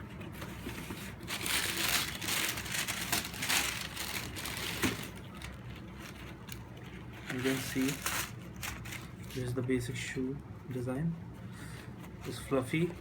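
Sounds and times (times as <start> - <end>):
packaging crinkling and rustling: 0.1 - 9.6.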